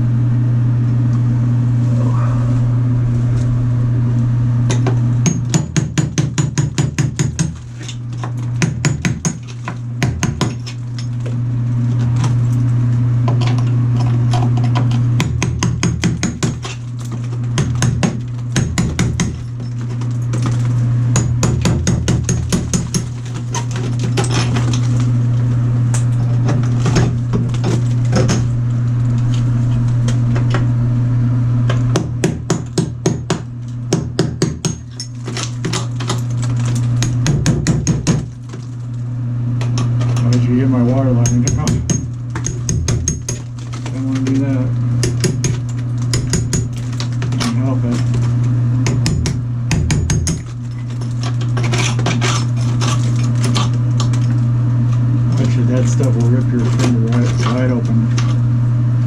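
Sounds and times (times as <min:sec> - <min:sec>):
steady low hum: 0:00.0 - 0:59.0
hammer chipping tile: 0:04.7 - 0:11.1, 0:14.7 - 0:24.8, 0:31.9 - 0:38.6, 0:41.2 - 0:44.4, 0:45.0 - 0:48.2, 0:48.8 - 0:54.3.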